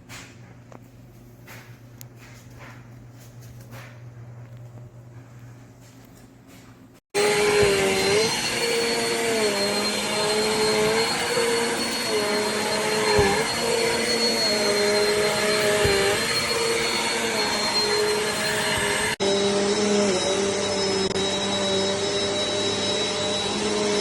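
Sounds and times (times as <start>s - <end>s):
vacuum cleaner running: 7.1s - 24.0s.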